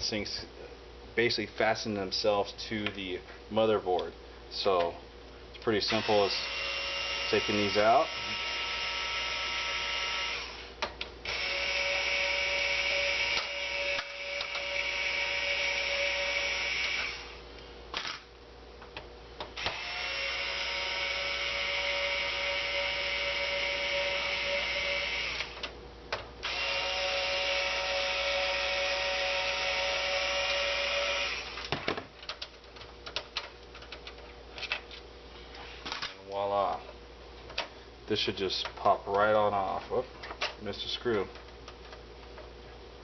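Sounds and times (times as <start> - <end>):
electric screwdriver whirring: 5.9 - 10.7, 11.3 - 17.4, 19.6 - 25.7, 26.4 - 31.7.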